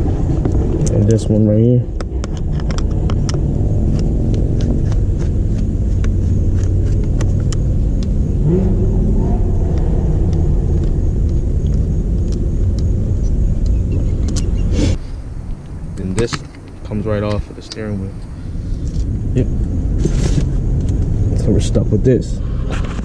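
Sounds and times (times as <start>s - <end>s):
vehicle engine rumbling: 0.0s - 23.0s.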